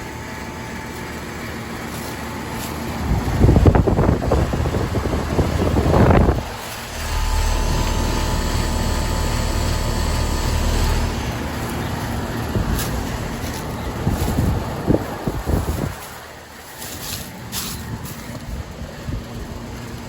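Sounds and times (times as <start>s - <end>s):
heat pump compressor and fan humming: 0.0s - 20.0s
loud rushing noise: 3.1s - 16.4s.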